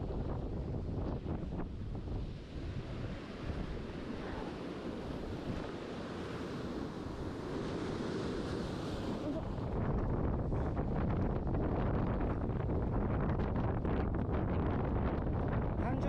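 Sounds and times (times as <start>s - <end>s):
wind buffeting microphone: 0.0s - 16.0s
sea surf washing on rocks: 2.1s - 10.9s.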